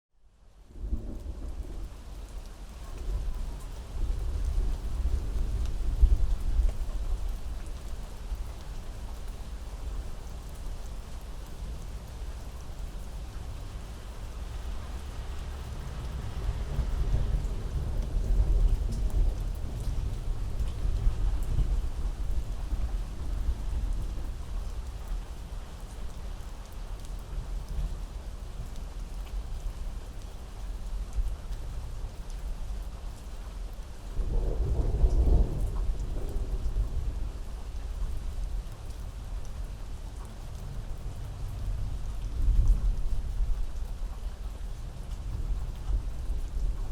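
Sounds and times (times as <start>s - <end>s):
rain falling: 0.2s - 46.9s
thunder rumbling: 34.1s - 38.6s.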